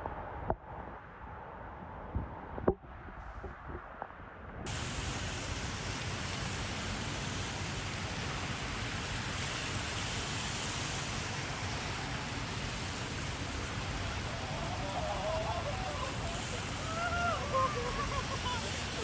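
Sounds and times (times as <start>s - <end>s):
heavy rain: 4.7s - 19.0s.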